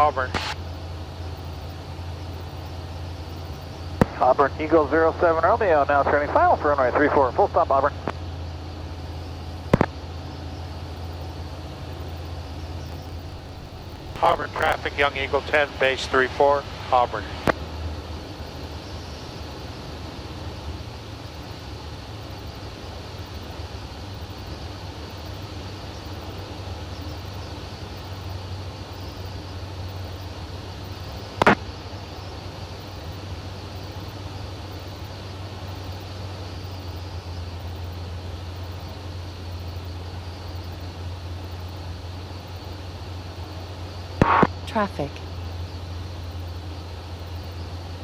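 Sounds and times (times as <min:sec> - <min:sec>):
airplane piston engine droning: 0:12.9 - 0:15.9
sharp click: 0:44.2 - 0:44.6.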